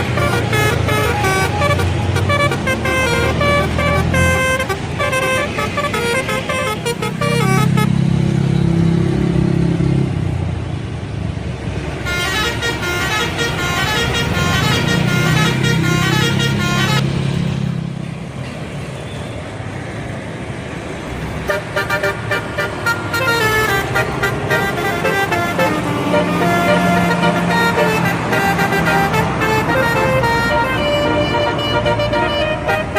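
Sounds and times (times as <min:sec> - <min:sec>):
multi-tone air horn tunes: 0:00.0 - 0:08.0, 0:12.0 - 0:17.2, 0:21.5 - 0:32.9
bus engine running: 0:00.0 - 0:32.9.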